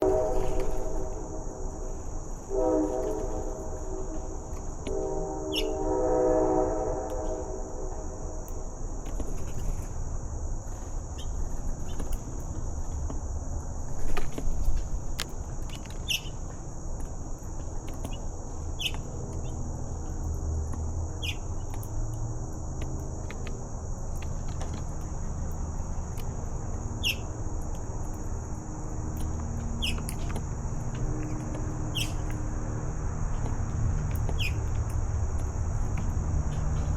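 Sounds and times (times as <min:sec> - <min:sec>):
distant deep multi-tone horn: 0:00.0 - 0:08.8
high insect drone: 0:00.0 - 0:36.9
high falling bird chirps: 0:05.4 - 0:05.8, 0:27.0 - 0:27.3, 0:29.7 - 0:30.3, 0:31.8 - 0:32.3, 0:34.3 - 0:34.7.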